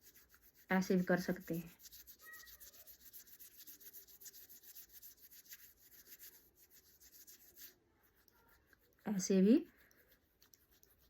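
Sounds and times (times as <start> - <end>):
hand rubbing skin: 0.0 - 9.0.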